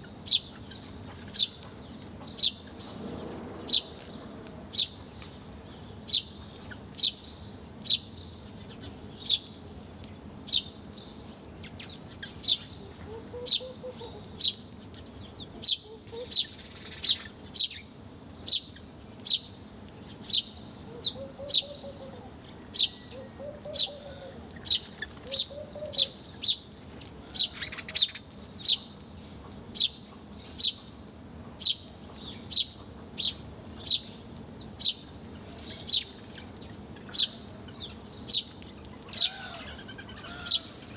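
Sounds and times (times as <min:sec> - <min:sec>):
bird chirping: 0:00.2 - 0:40.8
faint low bird calls: 0:10.5 - 0:17.8, 0:18.4 - 0:30.9, 0:31.6 - 0:40.9.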